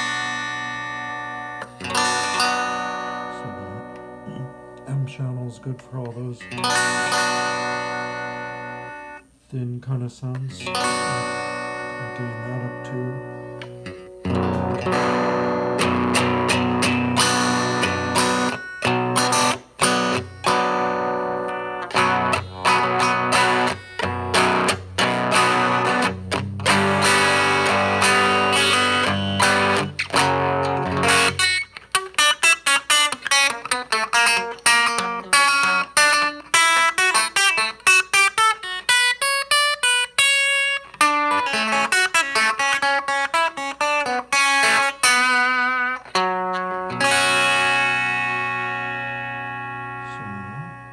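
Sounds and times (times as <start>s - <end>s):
distorted electric guitar: 0.0s - 9.3s, 10.3s - 50.9s.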